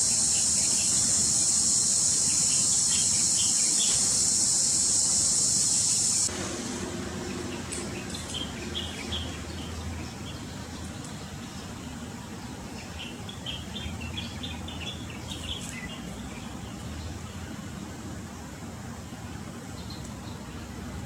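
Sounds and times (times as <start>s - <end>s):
small bird chirping: 0.0s - 6.3s.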